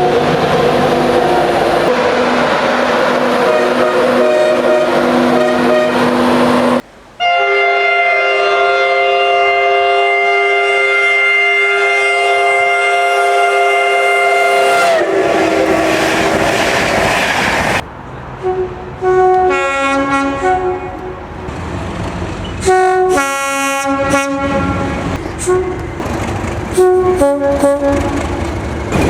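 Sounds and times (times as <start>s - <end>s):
passing train rail clatter: 0.0s - 9.0s, 11.0s - 29.0s
train air horn chord: 3.3s - 16.5s, 18.4s - 21.2s, 22.6s - 25.8s, 26.7s - 28.3s
two-tone train horn blasts: 3.3s - 16.6s, 18.4s - 21.3s, 22.6s - 26.0s, 26.7s - 28.5s.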